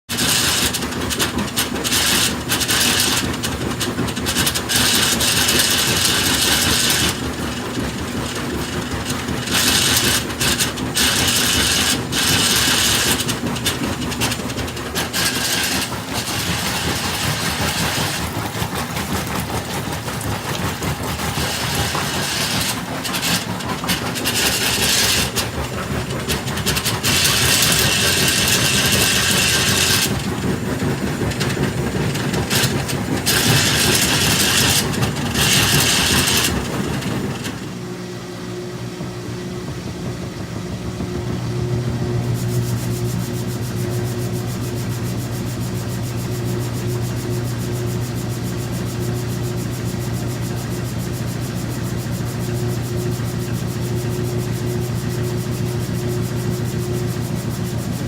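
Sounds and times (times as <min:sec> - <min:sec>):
washing machine metal grinding: 0:00.1 - 0:58.0
low running rumble: 0:07.2 - 0:49.0.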